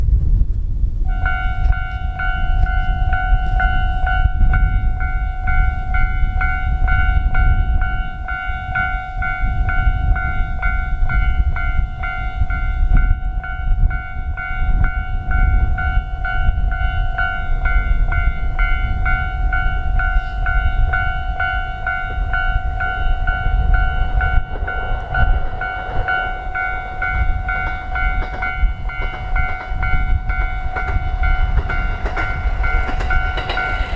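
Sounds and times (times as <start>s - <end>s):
level-crossing alarm ringing: 1.1s - 33.9s
low rumble: 17.2s - 33.9s.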